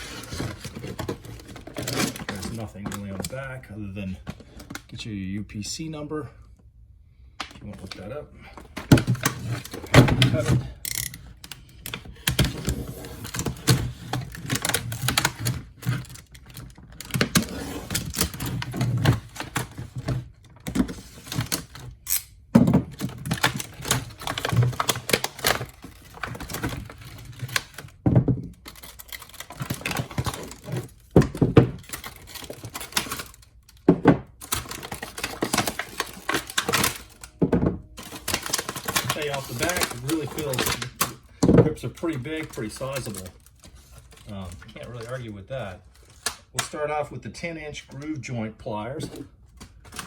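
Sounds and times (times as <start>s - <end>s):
handling noise: 0.0s - 3.6s
plastic packaging being cut: 23.0s - 27.8s, 38.0s - 41.2s.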